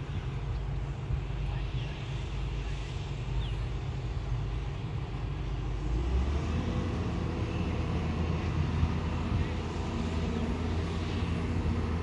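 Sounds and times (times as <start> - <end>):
excavator engine rumbling: 5.4 - 12.0.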